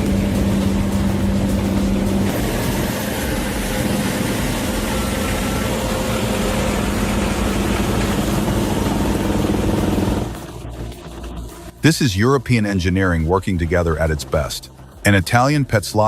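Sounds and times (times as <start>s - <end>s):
industrial shredding machine running: 0.0s - 11.8s.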